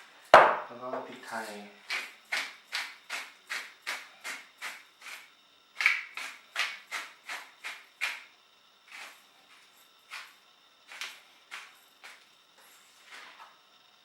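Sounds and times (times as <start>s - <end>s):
pepper mill grinding: 1.8s - 8.3s, 8.9s - 12.3s.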